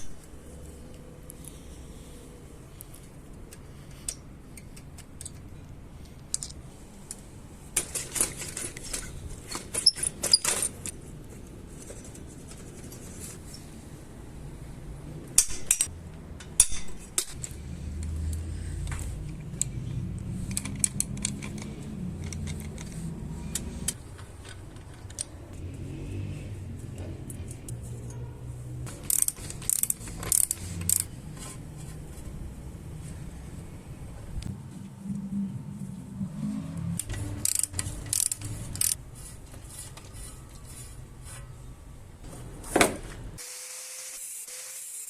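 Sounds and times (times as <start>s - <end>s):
metal tools clinking: 7.8s - 11.0s
low steady hum: 31.1s - 39.2s.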